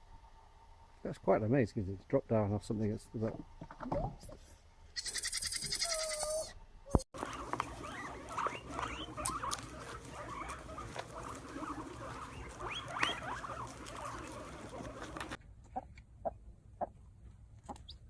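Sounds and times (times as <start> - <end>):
small animals squeaking and chirping: 4.9 - 16.9.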